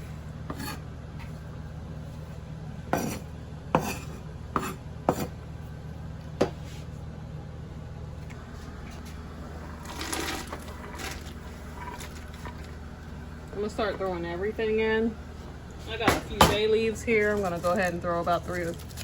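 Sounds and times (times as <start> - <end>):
steady low hum: 0.0 - 19.0
knife scraping board: 0.5 - 0.8, 2.9 - 5.4.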